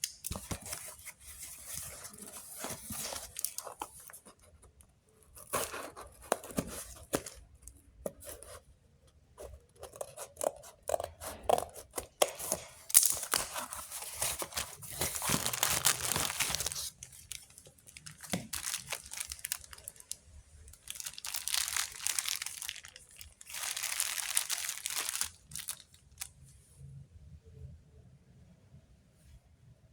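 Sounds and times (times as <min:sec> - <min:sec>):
packaging tearing and crinkling: 0:01.7 - 0:04.5, 0:05.4 - 0:07.4, 0:09.8 - 0:26.3.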